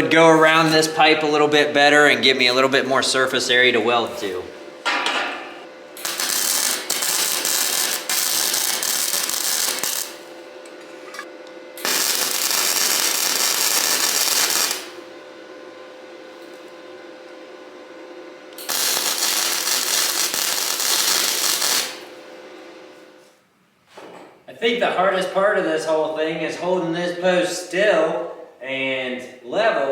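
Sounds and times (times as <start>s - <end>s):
steady hum: 0.0s - 23.9s
arc welding crackling hiss: 6.0s - 10.4s, 11.8s - 15.1s, 18.6s - 22.2s.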